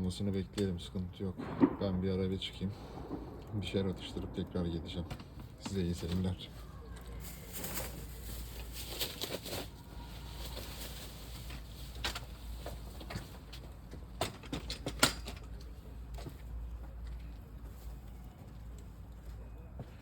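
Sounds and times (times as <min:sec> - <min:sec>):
steady low rumble: 0:00.0 - 0:09.0
firewood crackling and popping: 0:00.5 - 0:14.8.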